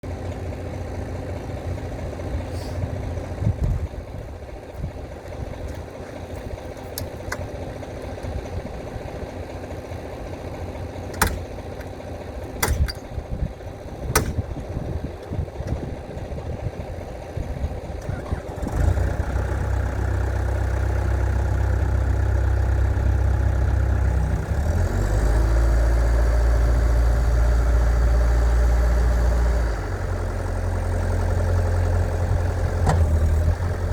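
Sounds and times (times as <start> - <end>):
diesel engine idling and revving: 0.0 - 33.9
sharp knocks: 11.1 - 11.5, 12.6 - 13.0, 14.1 - 14.4.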